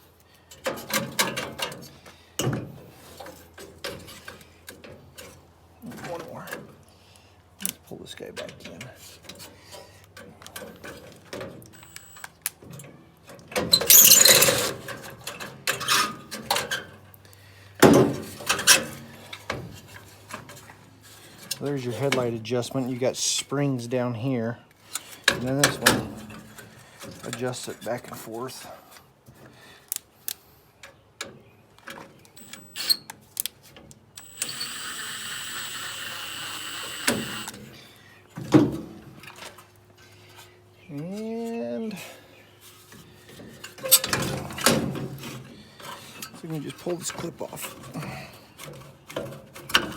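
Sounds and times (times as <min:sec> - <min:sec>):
electric drill motor whirring: 0:11.8 - 0:12.2, 0:32.4 - 0:33.0, 0:34.2 - 0:37.6.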